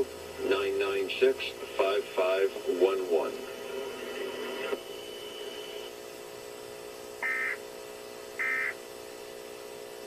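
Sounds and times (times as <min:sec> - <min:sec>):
steady low hum: 0:00.0 - 0:10.0
rasping digital data tones: 0:07.2 - 0:07.6.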